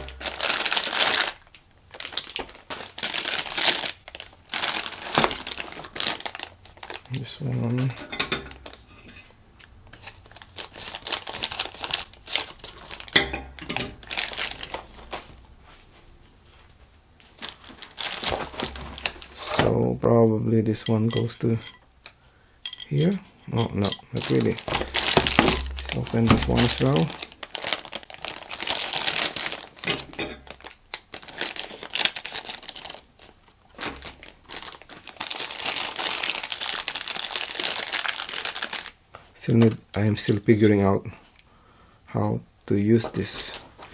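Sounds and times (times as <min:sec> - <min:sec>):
plastic packaging crinkling: 0:00.0 - 0:09.0, 0:09.8 - 0:15.4, 0:17.2 - 0:19.6, 0:23.0 - 0:40.3, 0:43.1 - 0:43.9.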